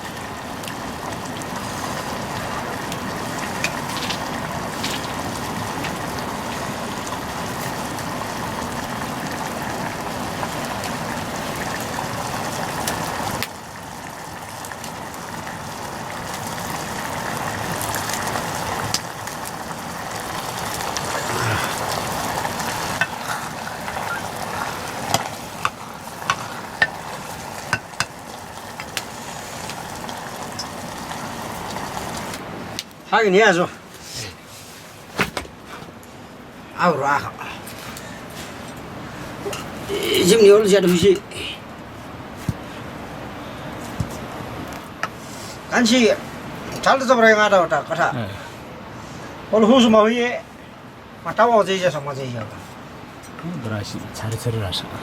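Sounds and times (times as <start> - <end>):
food sizzling in a pan: 0.0 - 32.4, 39.4 - 41.2.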